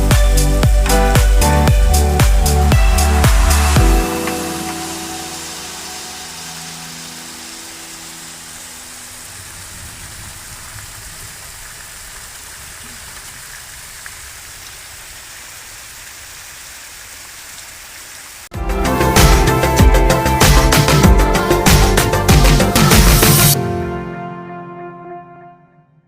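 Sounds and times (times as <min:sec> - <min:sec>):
background music with strong beat: 0:00.0 - 0:05.4, 0:18.6 - 0:23.6
rain falling: 0:00.0 - 0:23.6.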